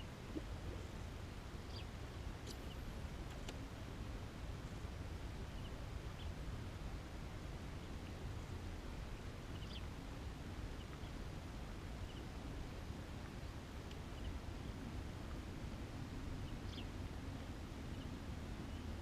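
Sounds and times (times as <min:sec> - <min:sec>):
low outdoor background rumble: 0:00.0 - 0:19.0
bird chirping: 0:01.6 - 0:02.8, 0:09.5 - 0:09.9, 0:16.5 - 0:16.9.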